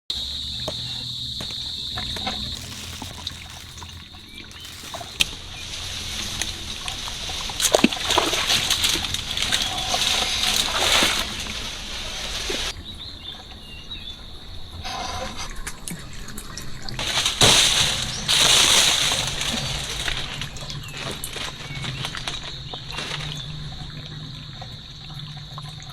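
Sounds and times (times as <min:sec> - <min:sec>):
high insect-like buzz: 0:00.2 - 0:05.4
water splashing and sloshing: 0:00.7 - 0:12.8, 0:15.0 - 0:25.9.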